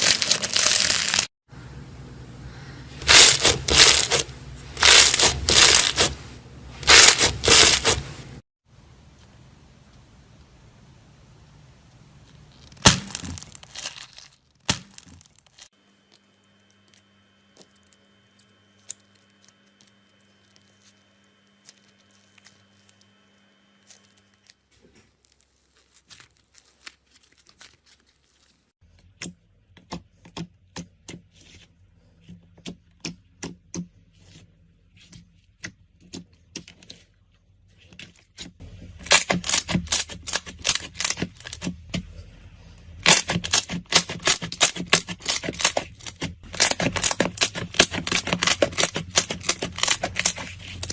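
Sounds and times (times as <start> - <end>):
slime crackling and popping: 0.0 - 1.3, 39.0 - 41.7, 43.0 - 50.9.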